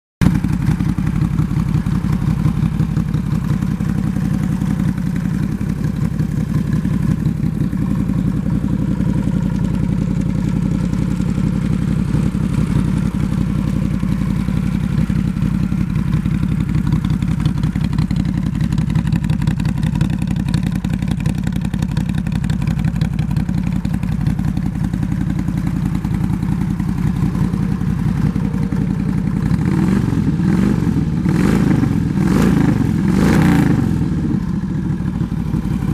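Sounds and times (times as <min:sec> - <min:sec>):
motorcycle engine idling: 0:00.2 - 0:35.9.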